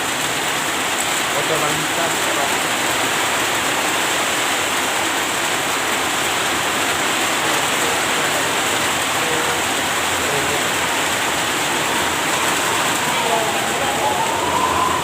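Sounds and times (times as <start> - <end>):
loud steady rushing noise: 0.0 - 15.0
faint voices: 7.3 - 15.0.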